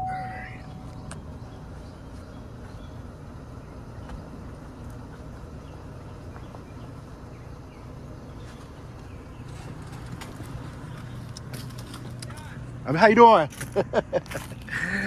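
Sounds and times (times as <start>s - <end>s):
vehicle engine humming: 0.0s - 15.0s.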